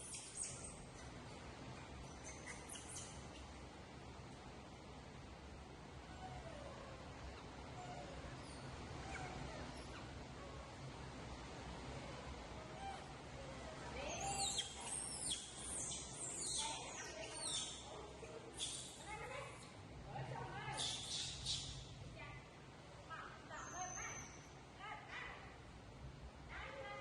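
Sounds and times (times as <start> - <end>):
high-pitched animal calls: 12.6 - 17.9.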